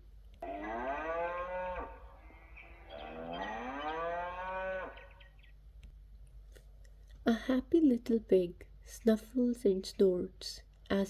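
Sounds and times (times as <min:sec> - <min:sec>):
cow mooing: 0:00.4 - 0:05.4.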